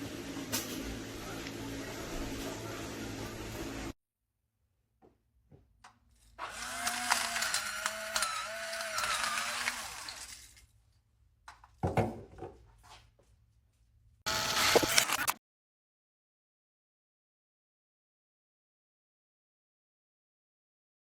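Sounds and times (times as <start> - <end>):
grinder motor whine: 6.4 - 10.4, 14.3 - 15.4.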